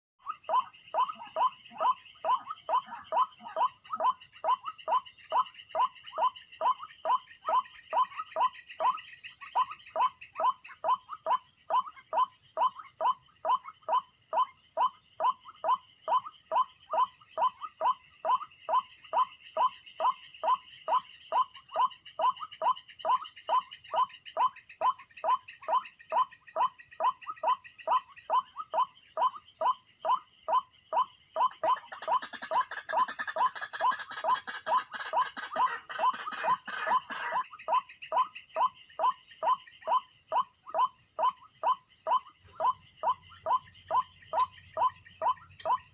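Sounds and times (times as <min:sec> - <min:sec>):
bird croaking calls: 0:00.2 - 0:45.9
high-pitched insect drone: 0:00.2 - 0:45.9.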